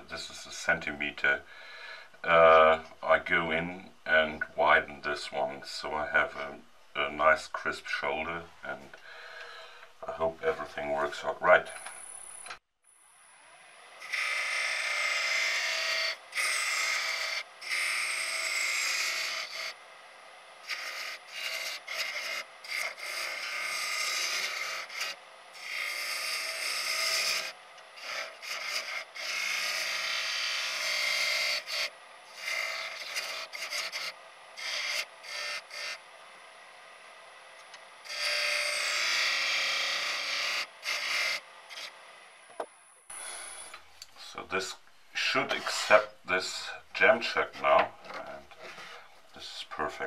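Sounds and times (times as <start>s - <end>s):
turning scraper on wood lathe: 14.0s - 19.8s, 20.6s - 36.0s, 38.0s - 42.0s, 45.2s - 49.1s.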